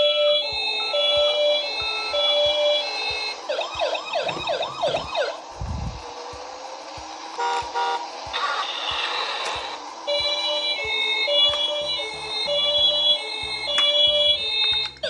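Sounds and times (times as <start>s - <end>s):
ambulance siren: 0.0s - 6.0s, 7.3s - 15.0s
short horn beeps: 7.4s - 8.0s.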